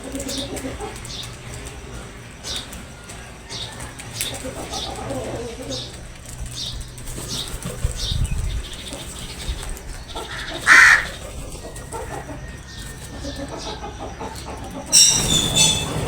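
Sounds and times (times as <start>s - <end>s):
crows cawing: 10.0s - 12.3s.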